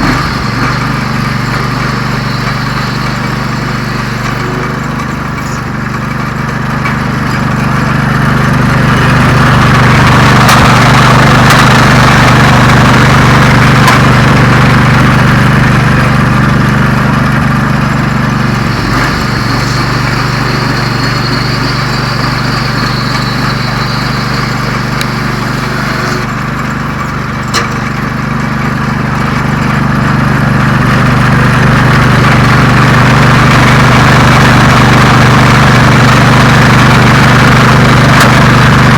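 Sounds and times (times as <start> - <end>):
disc cutting wood hiss: 0.0 - 4.7, 18.4 - 26.2
sawmill engine running under load: 0.0 - 38.9.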